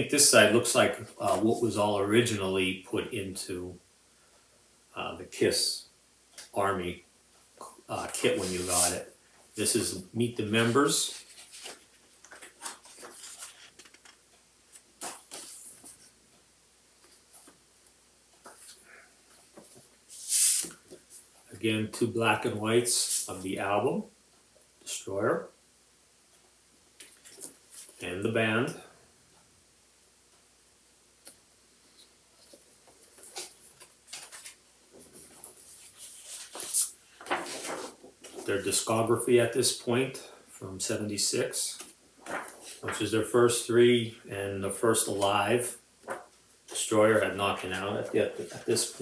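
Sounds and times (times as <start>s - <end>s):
paper and card rustling: 1.2s - 1.6s, 8.1s - 9.0s, 9.6s - 16.2s, 31.9s - 38.8s, 41.7s - 43.1s, 44.9s - 49.0s.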